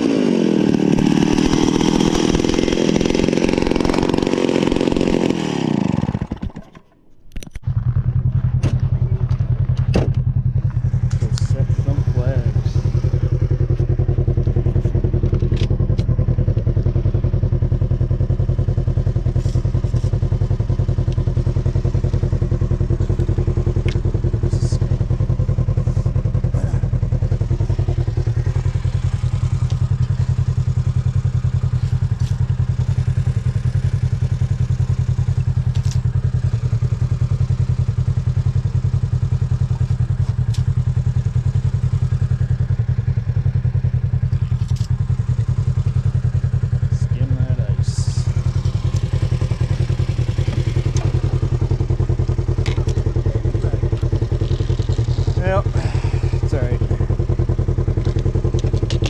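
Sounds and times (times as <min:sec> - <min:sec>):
small engine running: 0:00.0 - 0:06.9, 0:25.8 - 0:30.3, 0:47.0 - 0:57.1.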